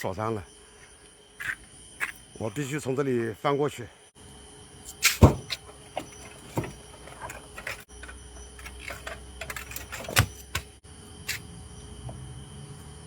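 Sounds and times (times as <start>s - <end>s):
knocks and scrapes on a gate: 4.9s - 11.4s.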